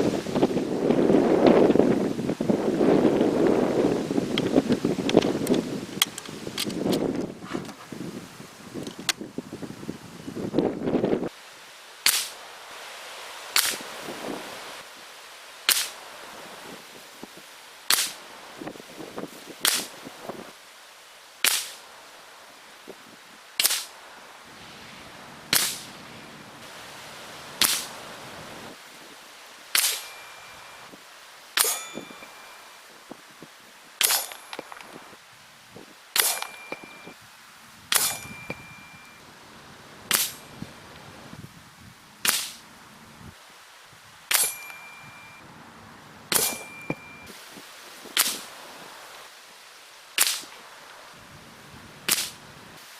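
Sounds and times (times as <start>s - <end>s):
air rifle shots: 12.0s - 12.4s, 15.7s - 16.0s, 17.9s - 18.2s, 19.6s - 20.0s, 21.4s - 21.8s, 23.6s - 23.9s, 25.5s - 26.0s, 27.6s - 28.0s, 29.7s - 30.2s, 31.6s - 32.3s, 34.0s - 34.7s, 36.2s - 36.9s, 37.9s - 38.7s, 40.1s - 40.4s, 42.2s - 42.6s, 44.3s - 44.8s, 46.3s - 47.0s, 48.2s - 48.5s, 50.2s - 50.5s, 52.1s - 52.4s
brief ringing tone: 30.0s - 30.9s, 31.7s - 32.8s, 36.4s - 37.2s, 38.1s - 39.2s, 44.4s - 45.4s, 46.4s - 47.3s.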